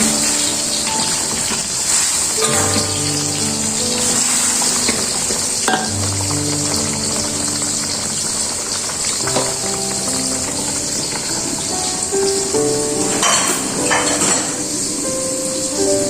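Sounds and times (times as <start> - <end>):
food sizzling in a pan: 0.0 - 16.0
soft background music: 0.0 - 16.0.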